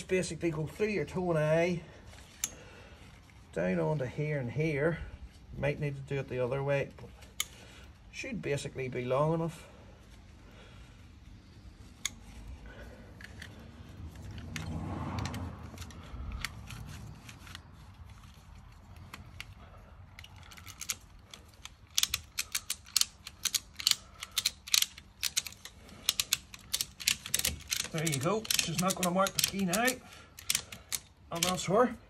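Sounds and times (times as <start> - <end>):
ratchet strap being handled: 2.1 - 3.6, 6.9 - 8.1, 10.0 - 31.9.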